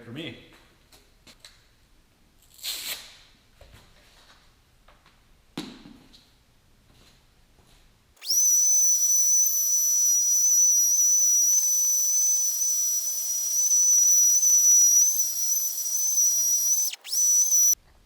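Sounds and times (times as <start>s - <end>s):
power grinder whining: 8.2s - 17.8s.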